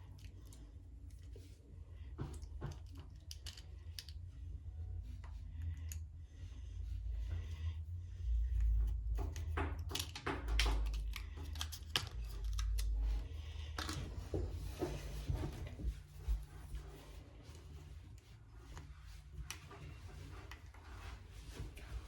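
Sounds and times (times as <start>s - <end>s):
plastic pieces clicking: 9.8s - 12.9s.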